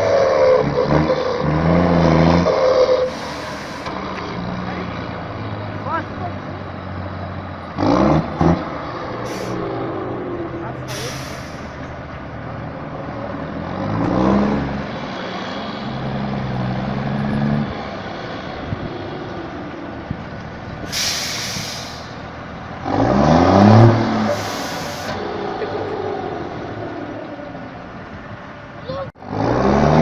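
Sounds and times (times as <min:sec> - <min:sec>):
truck diesel engine revving: 0:00.0 - 0:30.0
compressed air hissing: 0:03.1 - 0:03.9, 0:10.9 - 0:11.7, 0:20.9 - 0:22.2, 0:24.3 - 0:25.2.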